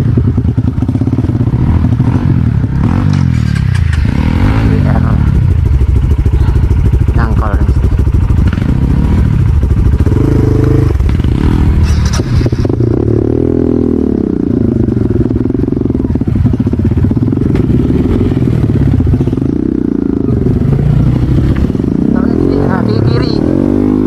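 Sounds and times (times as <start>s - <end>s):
motorcycle engine revving: 0.0s - 24.0s
brief clatter: 11.8s - 12.8s.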